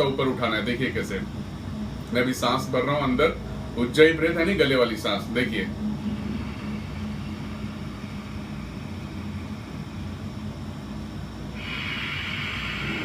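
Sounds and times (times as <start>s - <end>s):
low steady hum: 0.0s - 13.0s
slow hissing breath: 6.0s - 13.0s.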